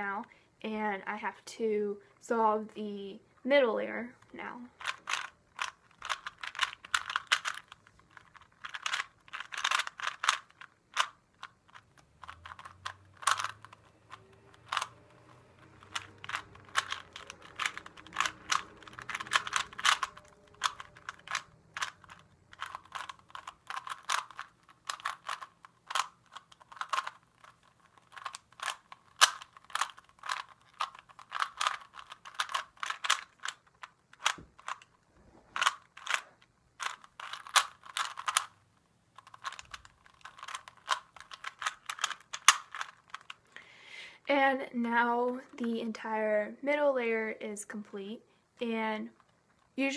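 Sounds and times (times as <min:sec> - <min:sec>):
puzzle cube layers clicking: 0:04.2 - 0:35.0, 0:35.6 - 0:38.6, 0:39.2 - 0:43.5.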